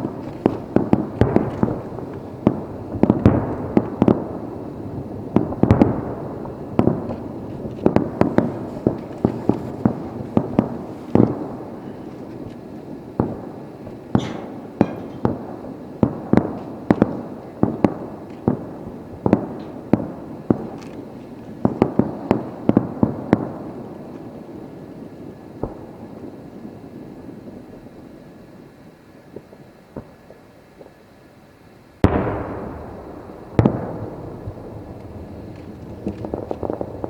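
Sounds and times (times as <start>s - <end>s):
firework shells bursting: 0.0s - 24.4s, 32.0s - 37.0s.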